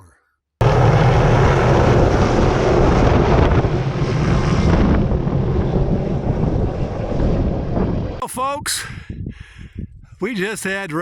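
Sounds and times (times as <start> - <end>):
helicopter engine and rotor roar: 0.6 - 8.2
wind buffeting microphone: 0.6 - 10.8.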